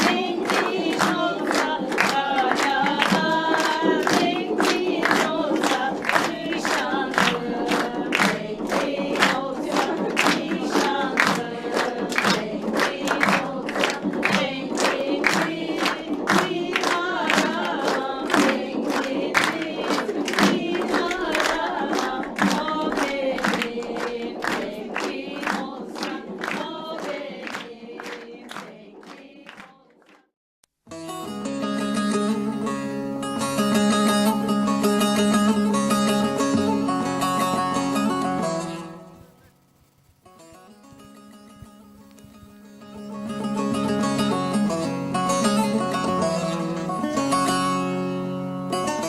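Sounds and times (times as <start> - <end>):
sharp steady beat: 0.0 - 29.0, 31.6 - 47.6
group singing: 0.0 - 30.3.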